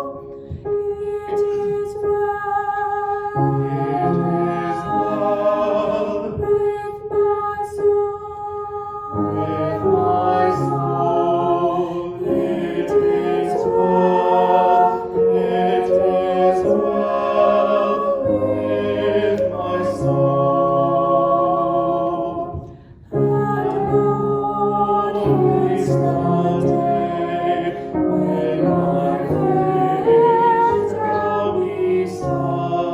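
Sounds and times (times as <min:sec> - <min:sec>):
voices singing a hymn: 0:00.0 - 0:32.9.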